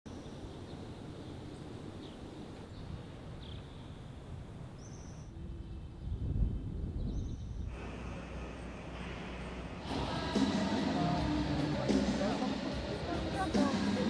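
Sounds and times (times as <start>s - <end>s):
steady low rumble: 5.3s - 14.0s.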